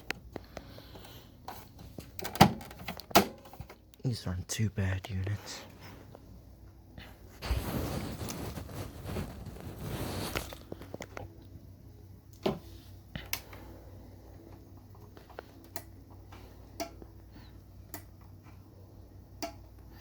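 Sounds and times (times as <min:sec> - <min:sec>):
faint low hum: 0:00.0 - 0:20.0
plastic casing rustle: 0:07.4 - 0:11.3.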